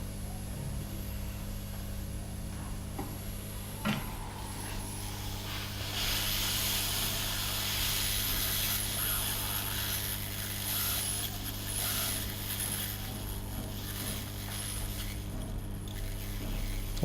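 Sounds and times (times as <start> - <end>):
low electrical hum: 0.0 - 17.0
hot-air gun hissing: 3.6 - 17.0.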